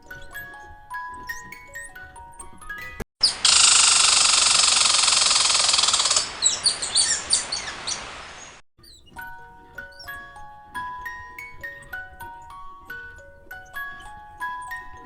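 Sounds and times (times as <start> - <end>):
birds chattering chorus: 3.2 - 8.6.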